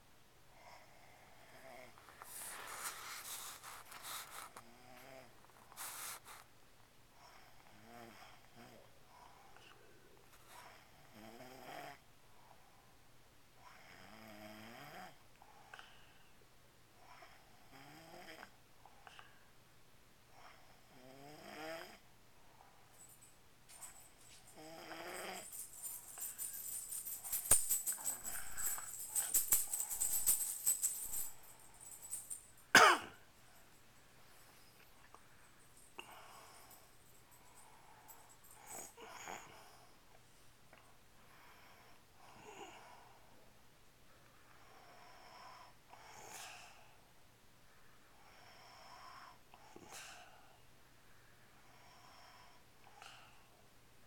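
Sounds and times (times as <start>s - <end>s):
noisy breaths: 0.6s - 6.5s, 22.4s - 32.7s, 33.4s - 40.0s, 41.2s - 43.5s
wavering snores: 7.2s - 9.0s, 10.6s - 12.0s, 13.6s - 15.2s, 17.0s - 18.6s, 20.4s - 22.0s, 24.6s - 25.5s
small metal pieces jingling: 25.0s - 32.6s.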